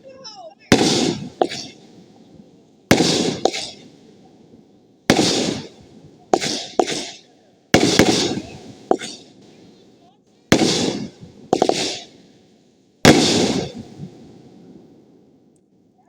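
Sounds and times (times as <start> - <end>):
fireworks bangs with crackling: 0.0 - 15.2
firework pops: 0.7 - 2.0, 2.9 - 4.1, 5.1 - 9.8, 10.4 - 12.3, 13.0 - 14.3.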